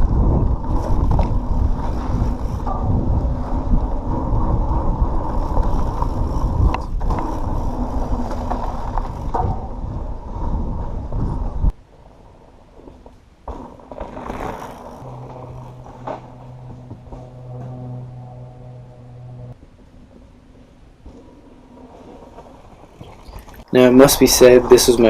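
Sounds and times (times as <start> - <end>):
wind on microphone: 0.0 - 11.8
bike tyres rumbling on dirt: 0.0 - 25.0.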